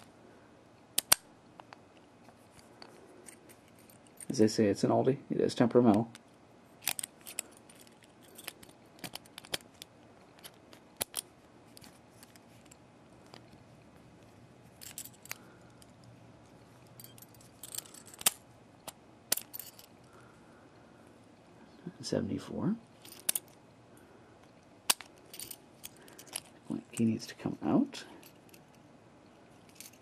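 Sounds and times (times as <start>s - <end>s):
padlock key clicking: 1.0s - 1.2s.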